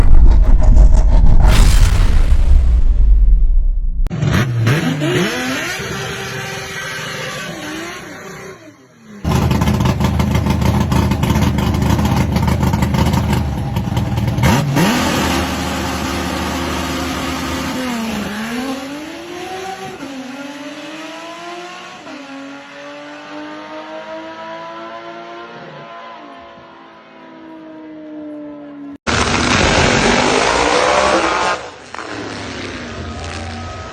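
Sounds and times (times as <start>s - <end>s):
drag car engine revving: 4.1s - 22.0s
car launching at full throttle: 29.1s - 33.9s.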